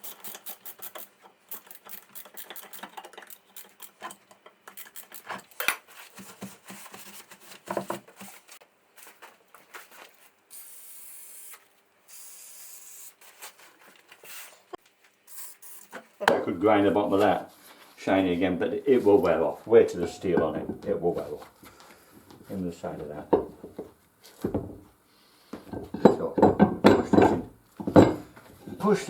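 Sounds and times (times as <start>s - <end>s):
metal parts clicking and tapping: 0.0s - 5.8s
abrasive rubbing on metal: 19.8s - 21.2s.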